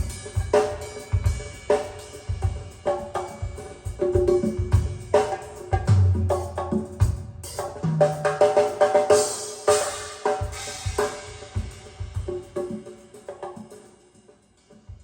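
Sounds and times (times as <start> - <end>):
cymbal wash: 9.1 - 15.0.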